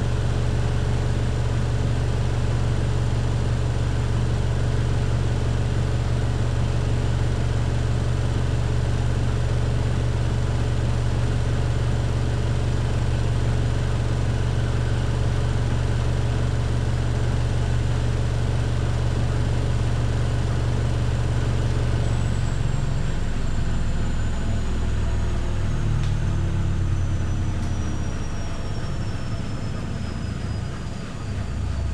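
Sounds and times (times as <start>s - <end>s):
washing machine spinning: 0.0s - 31.9s.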